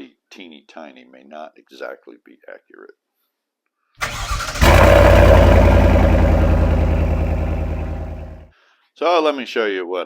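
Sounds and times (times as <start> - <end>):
engine cranking and running: 4.0 - 8.4.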